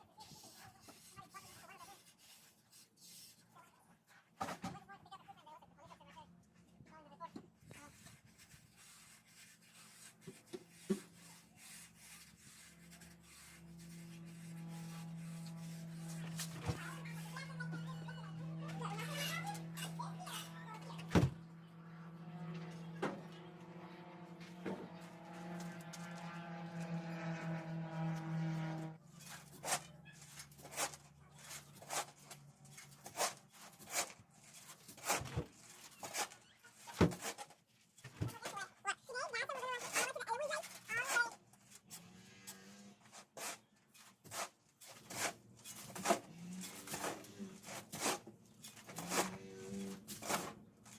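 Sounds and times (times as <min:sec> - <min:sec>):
hand tool scraping gravel: 0:00.2 - 0:03.5, 0:07.7 - 0:20.8, 0:29.1 - 0:37.8, 0:38.4 - 0:50.9
engine hum: 0:12.4 - 0:34.6, 0:41.6 - 0:43.2, 0:45.4 - 0:50.9.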